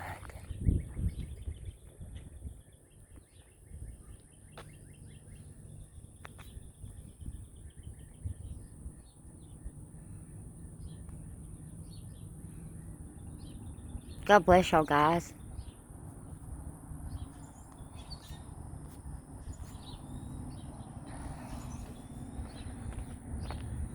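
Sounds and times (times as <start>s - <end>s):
small birds chirping: 0.4s - 23.8s
low uneven rumble: 15.5s - 23.9s.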